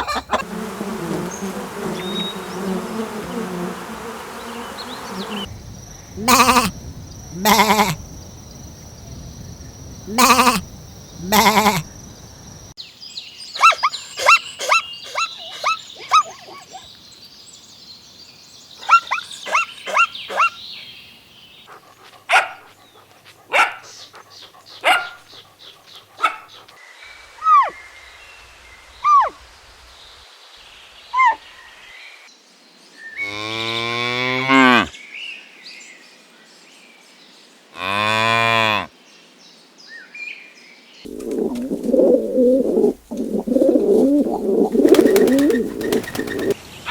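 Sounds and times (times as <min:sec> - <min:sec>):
cow mooing: 0:06.2 - 0:06.7, 0:07.4 - 0:08.0, 0:10.1 - 0:10.6, 0:33.2 - 0:34.9, 0:37.8 - 0:38.9.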